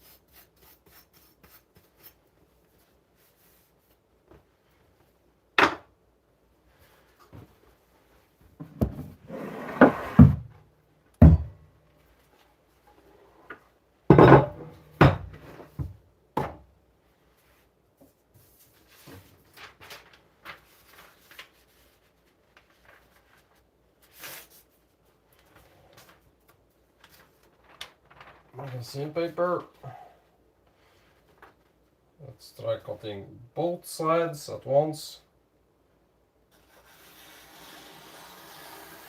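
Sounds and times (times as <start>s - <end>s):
handling knocks and thuds: 8.6s - 9.2s, 11.2s - 11.6s, 14.1s - 16.7s.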